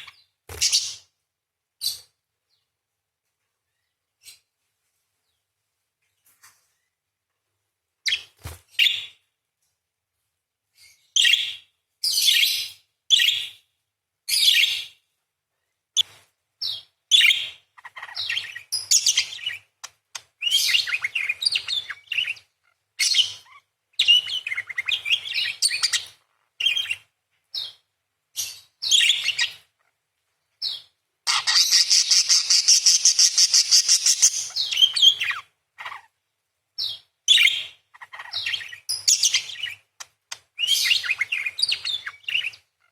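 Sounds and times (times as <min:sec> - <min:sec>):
parakeet chirping and chattering: 0:00.0 - 0:01.1, 0:16.0 - 0:27.8, 0:28.4 - 0:30.0, 0:30.6 - 0:36.2, 0:36.8 - 0:42.9.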